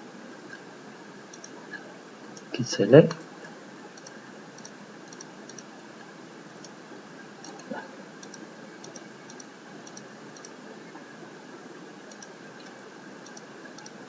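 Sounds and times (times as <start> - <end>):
computer mouse clicking: 1.3 - 1.6, 4.0 - 5.7, 7.4 - 10.6, 12.1 - 14.0.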